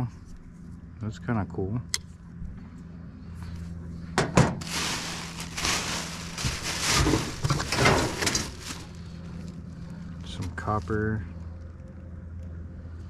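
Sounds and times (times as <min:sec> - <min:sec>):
steady low hum: 0:00.0 - 0:13.0
scrap rustling and clattering: 0:04.4 - 0:09.1.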